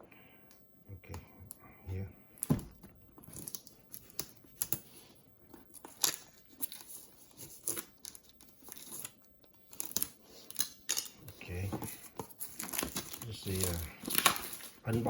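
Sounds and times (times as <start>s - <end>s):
packaging tearing and crinkling: 11.5s - 15.0s.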